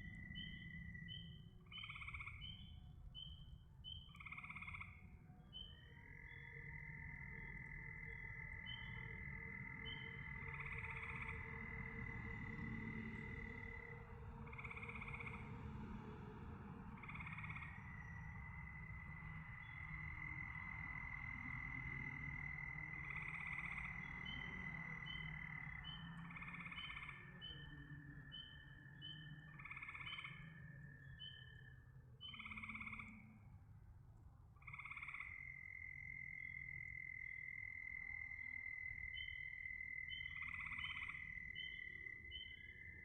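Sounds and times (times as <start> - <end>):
frog croaking loudly: 17.0 - 27.6, 32.3 - 33.3, 34.6 - 42.8.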